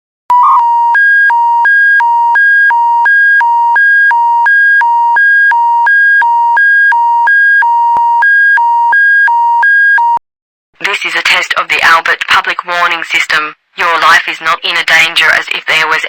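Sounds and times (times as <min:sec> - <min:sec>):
two-tone electronic alert signal: 0:00.3 - 0:10.2.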